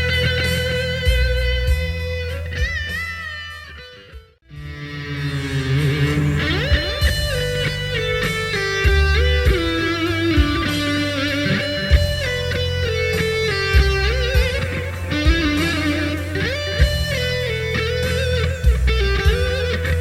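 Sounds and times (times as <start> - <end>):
electric guitar lead melody: 4.5 - 8.0
rock backing track: 4.6 - 20.0.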